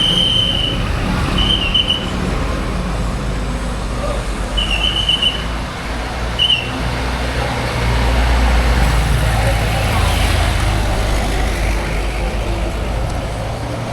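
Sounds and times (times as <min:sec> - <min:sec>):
high whistle blasts: 0:00.0 - 0:02.1, 0:04.6 - 0:05.5, 0:06.4 - 0:06.8
bus diesel engine rumbling: 0:00.0 - 0:13.9
traffic noise: 0:00.0 - 0:13.9.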